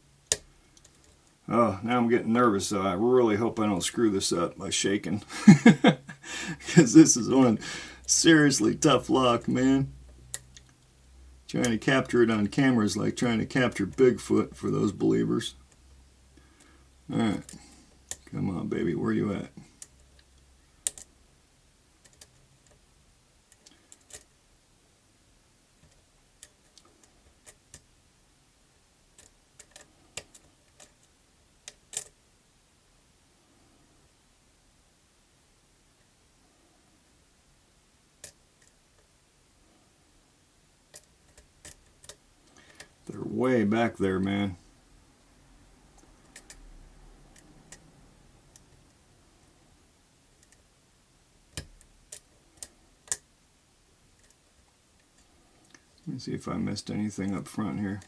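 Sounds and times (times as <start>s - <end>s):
lock pick metallic clicks: 19.8s - 21.1s, 23.5s - 24.3s, 29.2s - 32.2s.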